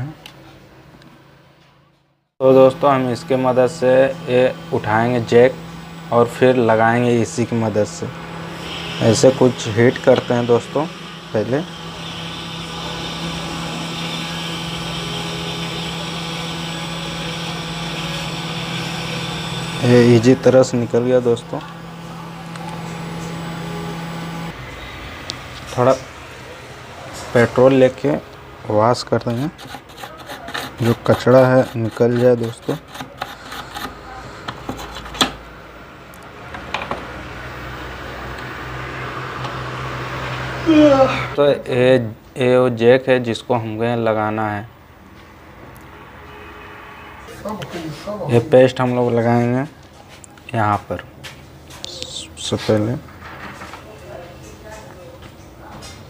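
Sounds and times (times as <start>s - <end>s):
hot air station hissing: 2.4s - 28.2s, 29.3s - 35.4s
small fan humming: 2.4s - 41.4s.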